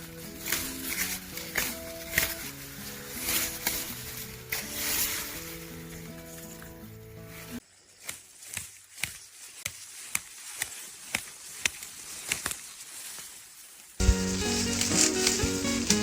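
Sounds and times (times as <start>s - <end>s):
music: 0.0s - 7.6s, 14.0s - 16.0s.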